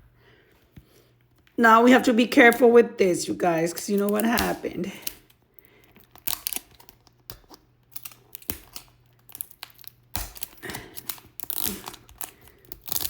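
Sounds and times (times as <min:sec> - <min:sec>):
plastic packaging clicks and crinkling: 0:03.8 - 0:13.0.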